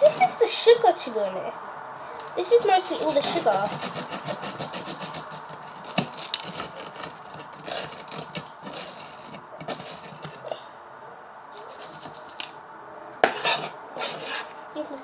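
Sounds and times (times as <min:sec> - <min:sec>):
spoon scraping a sieve: 0:13.3 - 0:14.5.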